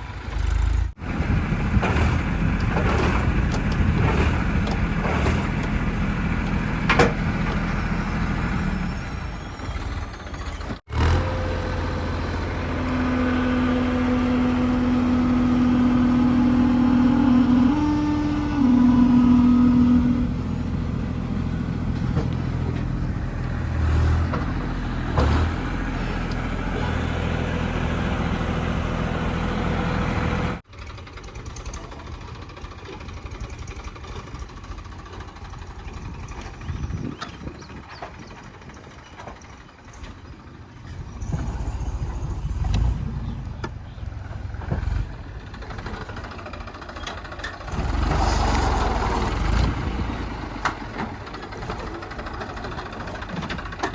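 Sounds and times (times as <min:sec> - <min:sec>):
diesel engine running: 0:00.0 - 0:53.9
distant engine: 0:00.0 - 0:53.9.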